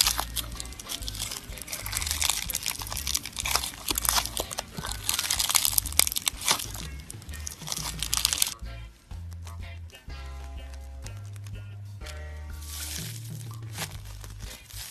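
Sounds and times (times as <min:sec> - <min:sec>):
crunchy slime crackling: 0:00.0 - 0:08.6, 0:09.4 - 0:14.9
background music: 0:00.0 - 0:14.9.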